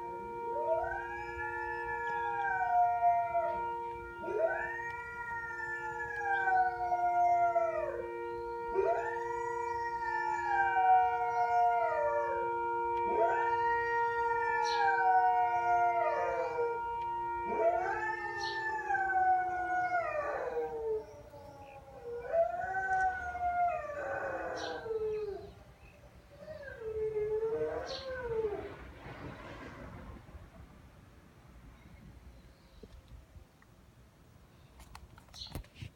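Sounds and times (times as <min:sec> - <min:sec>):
siren steady tone: 0:00.0 - 0:30.2
dog howling: 0:00.6 - 0:28.8.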